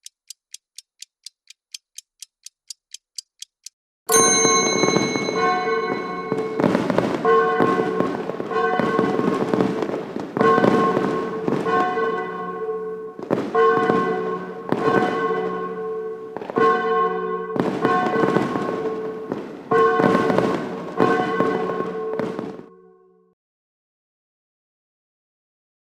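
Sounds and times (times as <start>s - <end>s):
ringing alert tone: 4.1s - 7.0s
fireworks bursts: 4.8s - 12.2s, 13.2s - 15.5s, 17.6s - 22.6s.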